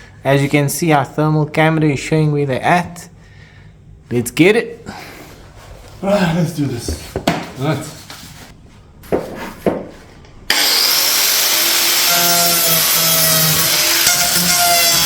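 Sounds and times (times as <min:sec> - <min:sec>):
power saw cutting: 0:10.5 - 0:15.0.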